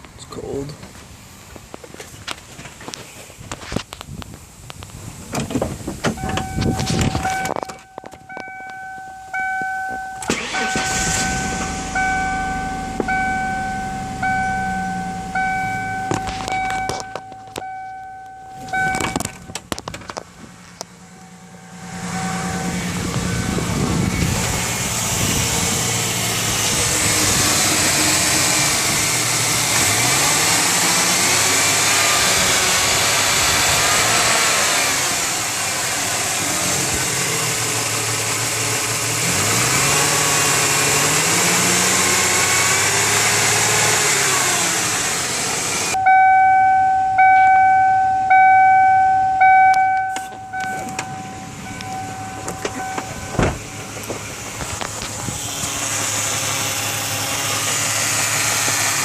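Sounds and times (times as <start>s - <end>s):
electronic beep: 6.2s - 19.5s, 46.0s - 53.4s
car engine revving: 10.2s - 17.7s, 18.4s - 46.0s, 49.2s - 59.0s.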